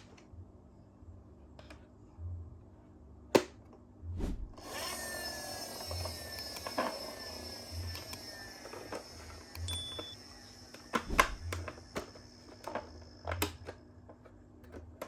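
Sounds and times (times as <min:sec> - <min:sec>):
toy car rolling on plastic: 0:04.7 - 0:10.1.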